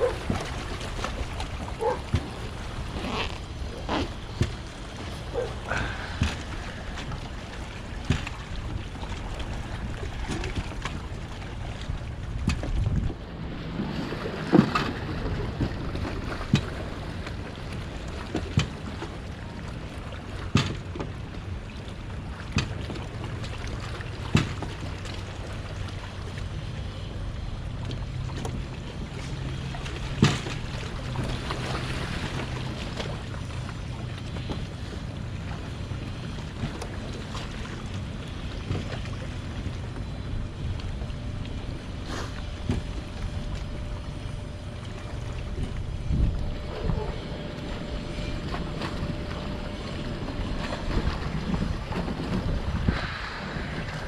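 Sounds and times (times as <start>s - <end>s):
boat hull knocking: 0.0s - 13.2s, 20.4s - 21.2s, 27.9s - 31.6s
steady low hum: 0.0s - 54.0s
water around boats: 0.0s - 54.0s
wind on microphone: 11.8s - 16.6s, 45.4s - 54.0s.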